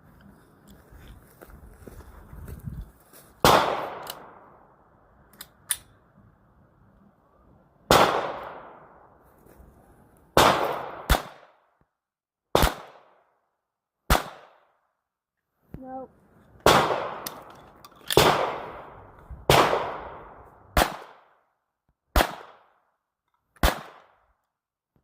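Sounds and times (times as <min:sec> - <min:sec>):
gunshots with echo: 0:03.4 - 0:04.3, 0:07.9 - 0:08.9, 0:10.4 - 0:11.5, 0:16.6 - 0:17.3, 0:18.2 - 0:18.9, 0:19.5 - 0:21.3.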